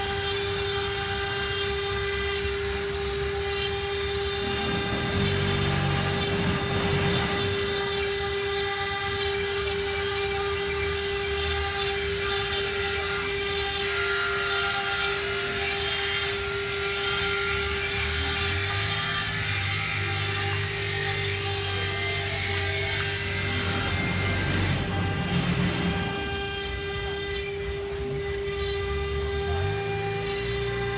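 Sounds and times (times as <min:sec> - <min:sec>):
spindle whining cutting stone: 0:00.0 - 0:30.9.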